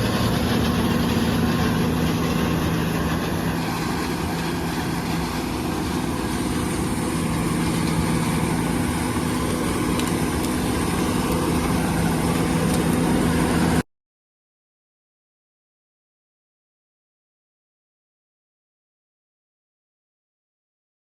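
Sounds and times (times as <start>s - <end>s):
diesel engine running steadily: 0.0s - 13.8s.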